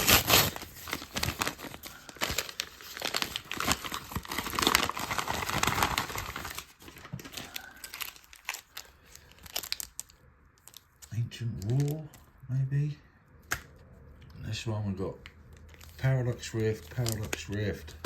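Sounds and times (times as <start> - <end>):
packaging crinkling and tearing: 0.0 - 12.2, 15.4 - 18.0.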